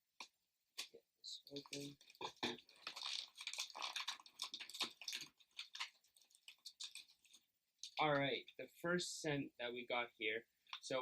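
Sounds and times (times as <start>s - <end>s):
packaging crackling and rustling: 1.5s - 8.0s.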